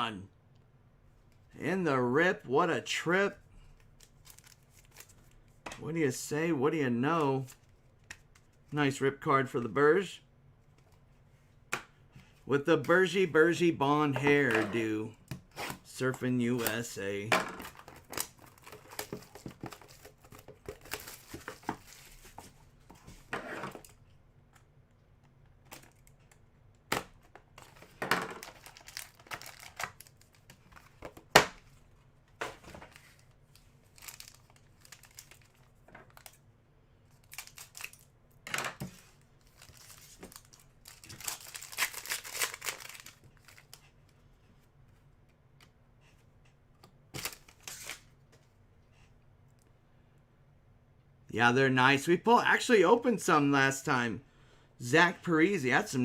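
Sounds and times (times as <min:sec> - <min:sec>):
pack wrappers crinkling and tearing: 0:03.9 - 0:05.4, 0:28.4 - 0:30.6, 0:33.9 - 0:36.4, 0:37.1 - 0:38.1, 0:39.4 - 0:43.9.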